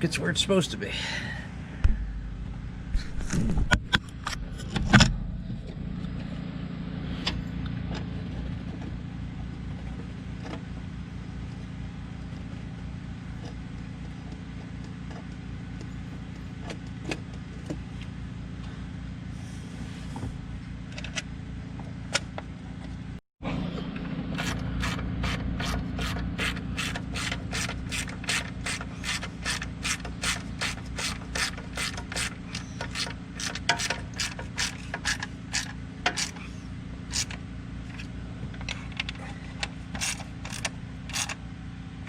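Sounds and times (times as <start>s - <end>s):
steady low hum: 0.0s - 42.0s
metal clanks and knocks: 26.8s - 36.5s
light clicks of handling parts: 37.1s - 41.4s.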